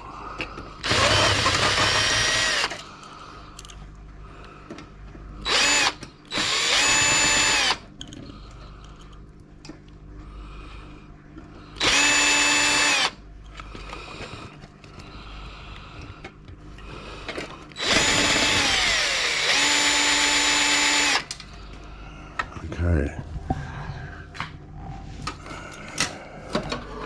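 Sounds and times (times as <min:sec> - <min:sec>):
cordless drill motor whine: 0:00.8 - 0:02.8, 0:05.4 - 0:07.9, 0:11.8 - 0:13.2, 0:17.8 - 0:21.3.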